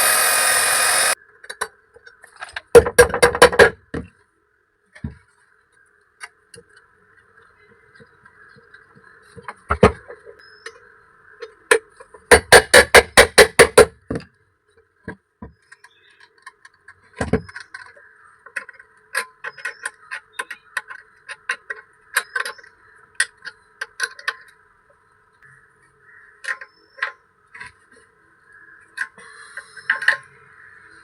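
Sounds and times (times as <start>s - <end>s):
steady hum: 0.0s - 1.2s.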